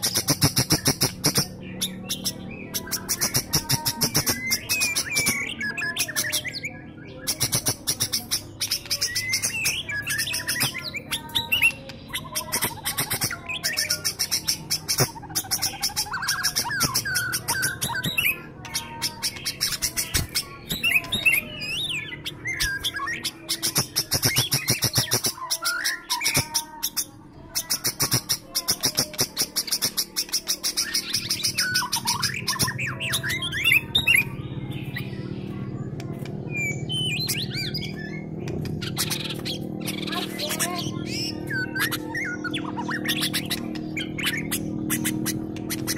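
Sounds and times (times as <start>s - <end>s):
rapid high-pitched chattering: 0.0s - 45.9s
bird singing whistled phrases: 0.2s - 27.1s.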